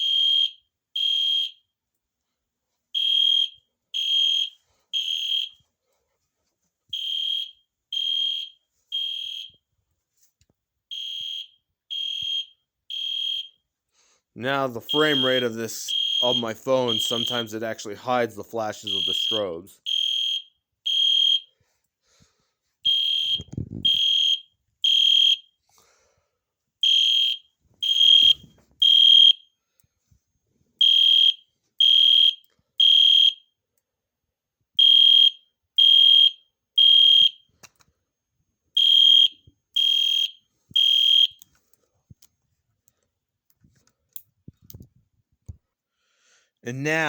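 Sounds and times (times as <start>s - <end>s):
high electronic alarm beeps: 14.8s - 17.5s, 18.8s - 21.4s, 22.9s - 25.4s, 26.8s - 29.4s, 30.8s - 33.4s, 34.8s - 37.4s, 38.8s - 41.4s.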